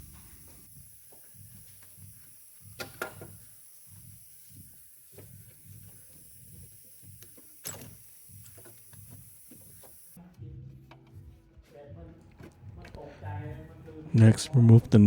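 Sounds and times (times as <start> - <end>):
metallic clicks of hand tools: 7.2 - 10.0.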